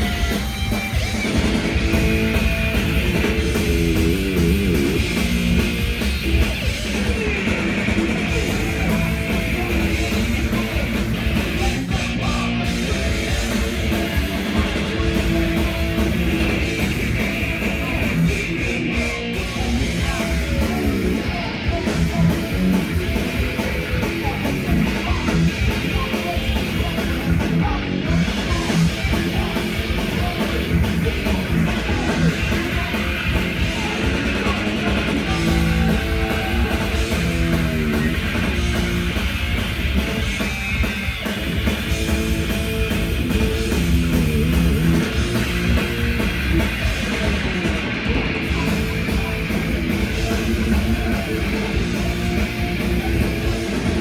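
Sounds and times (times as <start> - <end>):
distorted electric guitars: 0.0 - 54.0
drums: 0.0 - 54.0.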